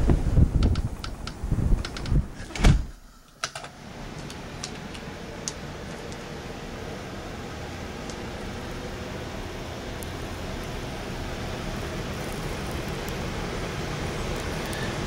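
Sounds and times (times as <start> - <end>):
wind buffeting microphone: 0.0 - 2.9
steady hiss: 0.0 - 15.0.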